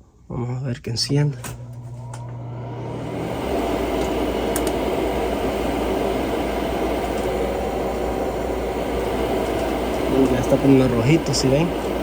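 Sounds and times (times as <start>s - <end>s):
furnace inducer fan running: 0.0s - 12.0s.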